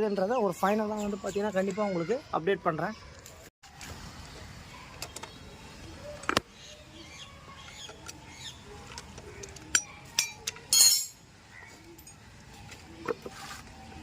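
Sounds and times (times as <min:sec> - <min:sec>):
metal tools clinking and knocking: 0:08.9 - 0:11.2, 0:12.0 - 0:12.2.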